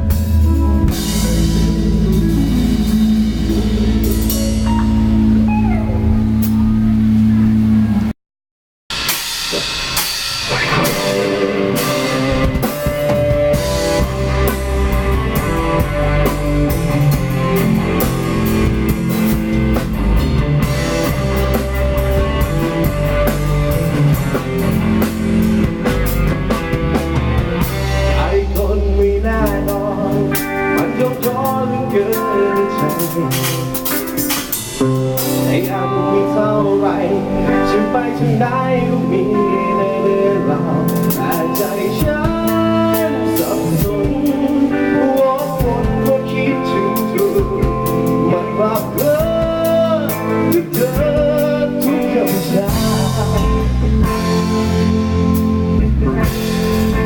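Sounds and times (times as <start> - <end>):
instrumental band music: 0.0 - 8.1, 8.9 - 57.0.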